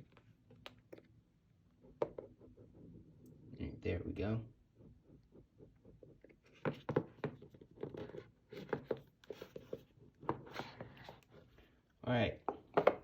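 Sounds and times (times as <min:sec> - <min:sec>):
cardboard and paper rustling: 0:06.5 - 0:11.6.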